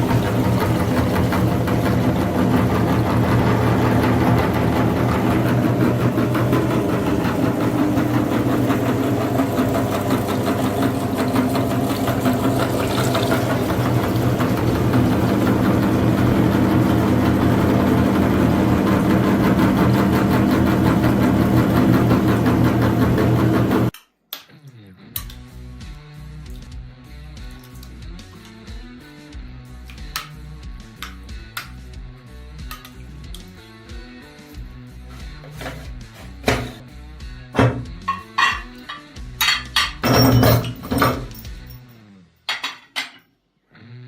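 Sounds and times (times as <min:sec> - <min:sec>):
electric meat grinder running: 0:00.0 - 0:23.9, 0:35.2 - 0:36.8.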